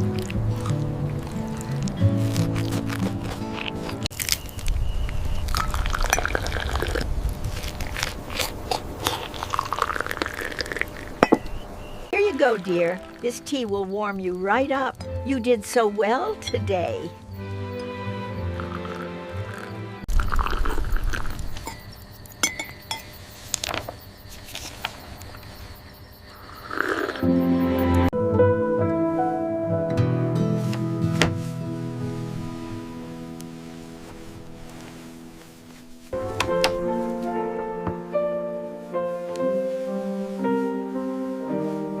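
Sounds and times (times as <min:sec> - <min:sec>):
teacups clinking: 0:05.4 - 0:07.1, 0:09.3 - 0:13.4, 0:17.8 - 0:23.8
tea pouring into cup: 0:05.5 - 0:07.1, 0:09.3 - 0:11.3, 0:12.2 - 0:13.3, 0:18.6 - 0:21.8
crockery clinking: 0:11.2 - 0:11.6, 0:21.5 - 0:23.2
muffled rustle: 0:30.6 - 0:36.2, 0:38.7 - 0:42.0.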